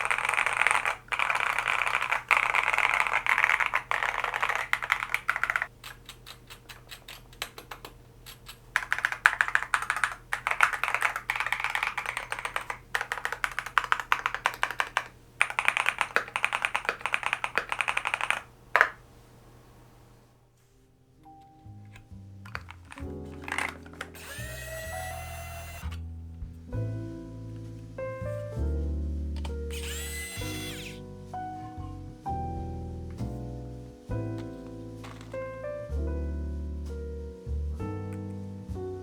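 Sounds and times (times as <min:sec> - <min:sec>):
mechanical keyboard typing: 0:00.0 - 0:19.0, 0:22.5 - 0:25.8.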